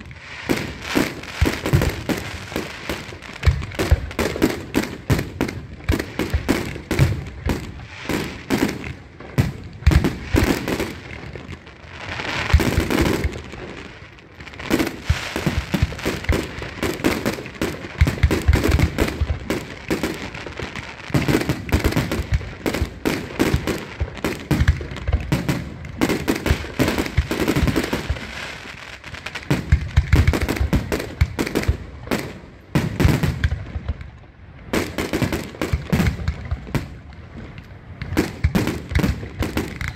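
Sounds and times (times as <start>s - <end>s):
fireworks hissing: 0.0s - 4.9s, 7.6s - 8.7s, 11.8s - 18.0s
fireworks bangs and crackles: 0.0s - 39.9s.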